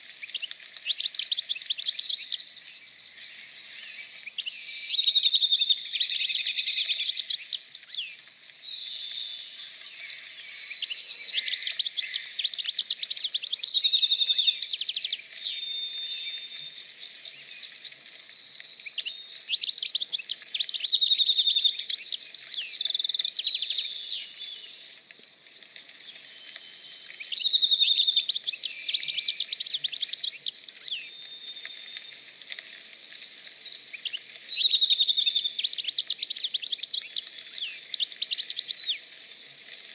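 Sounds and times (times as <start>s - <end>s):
small birds chirping and trilling: 0.0s - 39.9s.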